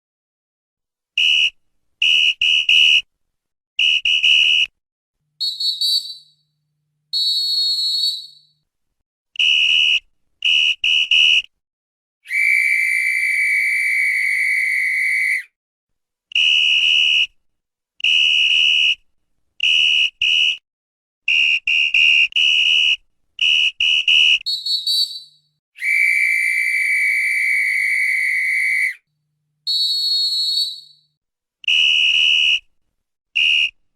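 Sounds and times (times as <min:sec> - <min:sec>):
referee's whistle blasts: 0:05.4 - 0:06.3, 0:07.2 - 0:08.4, 0:12.3 - 0:15.5, 0:24.4 - 0:29.0, 0:29.7 - 0:31.1.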